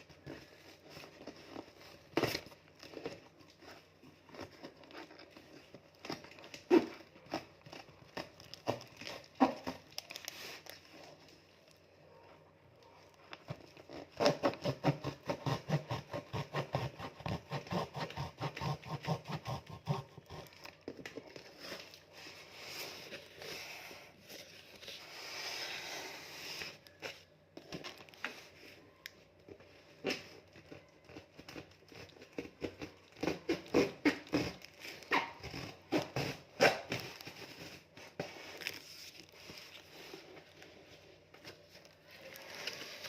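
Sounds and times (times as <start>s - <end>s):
packaging crinkling and tearing: 0.0s - 12.0s, 19.1s - 23.5s, 26.6s - 43.0s.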